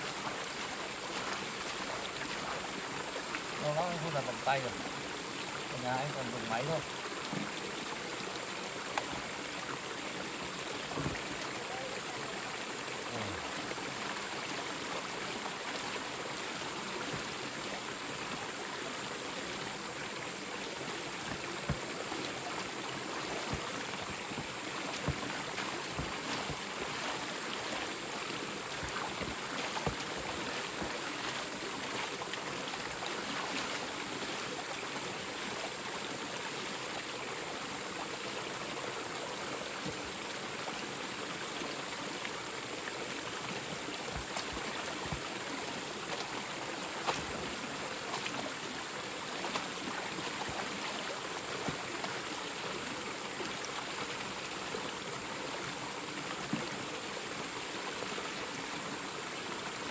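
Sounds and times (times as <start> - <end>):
stream running over rocks: 0.0 - 59.9
knocks or splashes: 10.8 - 11.8, 21.3 - 32.1.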